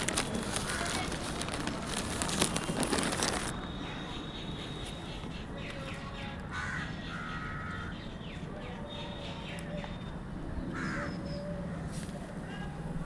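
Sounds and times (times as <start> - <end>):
crow cawing: 6.5 - 8.0, 10.8 - 11.1.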